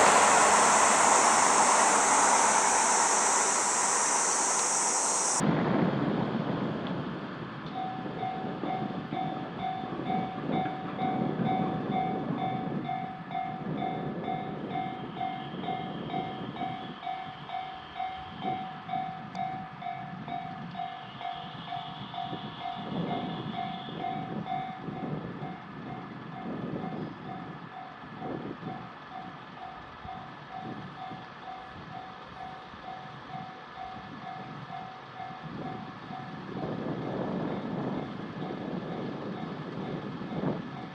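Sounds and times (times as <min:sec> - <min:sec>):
level-crossing warning bell: 0:00.0 - 0:05.4, 0:07.8 - 0:26.6, 0:29.2 - 0:36.4
wheels clattering on rails: 0:00.0 - 0:05.4
train rumbling past: 0:00.0 - 0:05.6.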